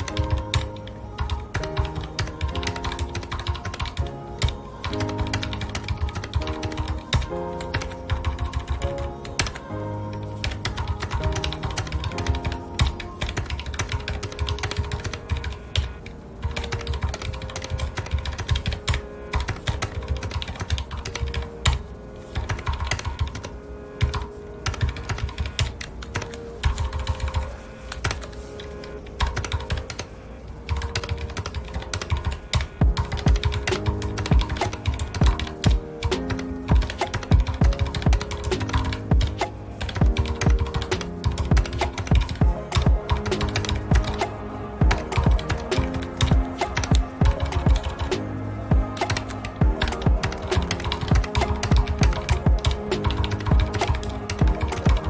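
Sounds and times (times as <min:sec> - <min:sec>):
background music of held notes: 0:00.0 - 0:55.0
mechanical keyboard typing: 0:10.4 - 0:21.8, 0:29.2 - 0:30.0, 0:30.7 - 0:44.3, 0:45.0 - 0:55.0.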